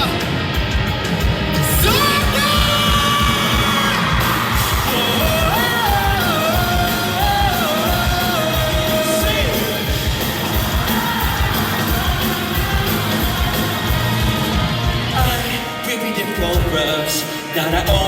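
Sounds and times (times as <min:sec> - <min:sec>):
pounding drum beat: 0:00.0 - 0:15.8
live rock band through pa: 0:00.0 - 0:18.0
people shouting: 0:01.7 - 0:09.6, 0:10.2 - 0:15.1.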